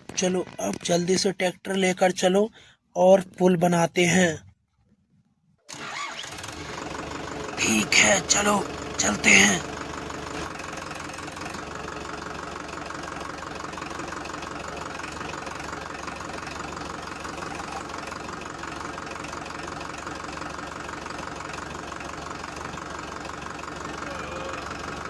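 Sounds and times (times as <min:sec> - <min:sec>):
tractor engine chugging: 0:05.8 - 0:25.0.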